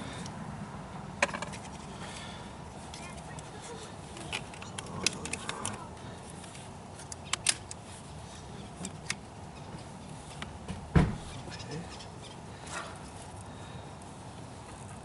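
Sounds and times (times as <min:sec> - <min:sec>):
louder thump: 0:10.7 - 0:11.2.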